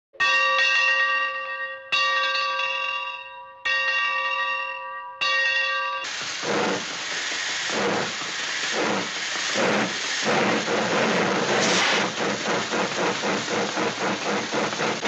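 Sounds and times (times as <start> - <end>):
hiss: 6.1 - 15.0.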